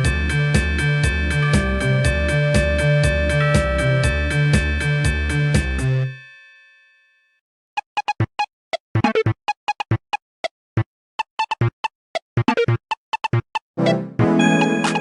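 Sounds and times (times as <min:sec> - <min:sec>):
synthesizer ringtone melody: 0:13.8 - 0:15.0.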